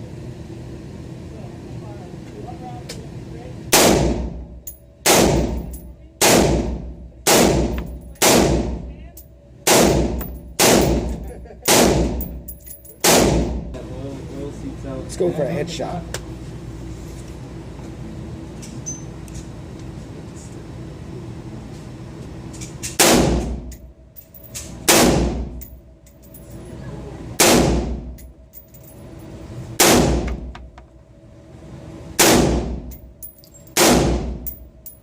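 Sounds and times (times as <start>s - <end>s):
rifle shots: 3.7s - 4.3s, 5.0s - 5.6s, 6.2s - 8.7s, 9.7s - 11.1s, 11.7s - 12.2s, 13.0s - 13.6s, 23.0s - 23.5s, 24.9s - 25.4s, 27.4s - 28.0s, 29.8s - 30.3s, 32.2s - 32.8s, 33.8s - 34.4s.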